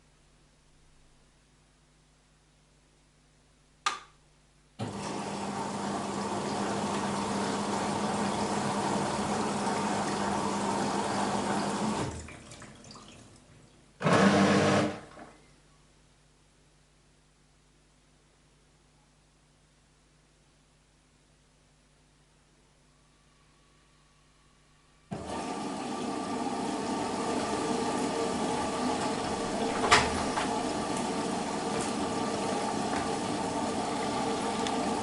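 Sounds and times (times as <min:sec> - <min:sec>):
water rushing into washing machine: 0:04.8 - 0:15.3, 0:25.1 - 0:35.0
washing machine click: 0:29.1 - 0:32.0.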